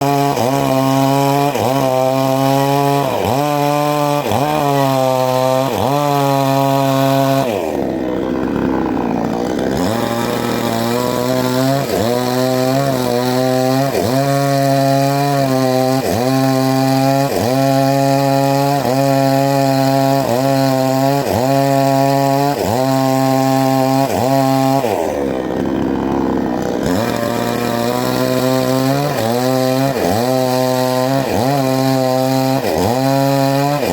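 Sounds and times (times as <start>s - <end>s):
chainsaw cutting wood: 0.0s - 33.9s.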